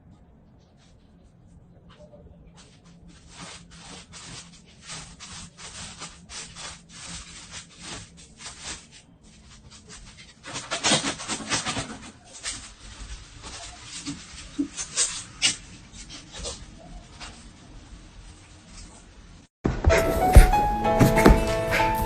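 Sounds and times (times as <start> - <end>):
scratching and rubbing: 0.6 - 19.2, 20.0 - 22.0.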